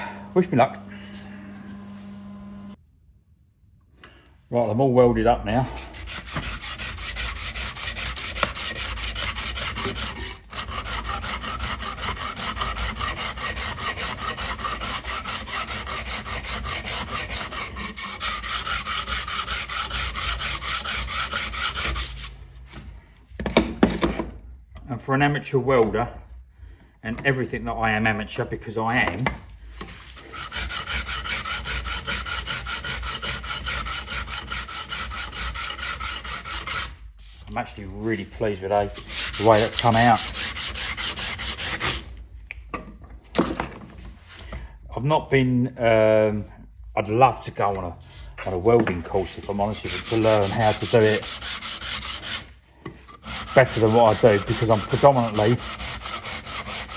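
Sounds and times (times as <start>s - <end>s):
hand file rasping on steel: 5.5s - 22.5s, 29.8s - 42.2s, 47.6s - 56.9s.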